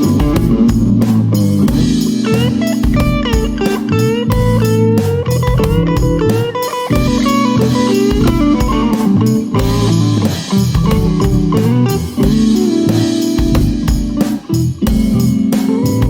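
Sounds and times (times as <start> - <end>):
bass guitar: 0.0 - 16.0
drums: 0.0 - 16.0
electric guitar lead line: 0.0 - 16.0.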